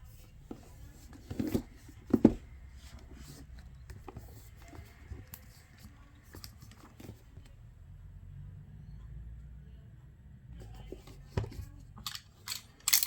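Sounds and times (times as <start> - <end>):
soft thumps on cardboard: 0.5 - 5.2.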